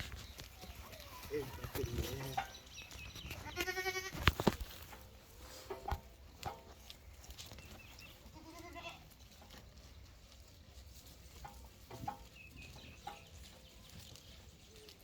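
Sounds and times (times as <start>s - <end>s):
goat bleating: 3.3s - 4.4s, 8.2s - 9.2s.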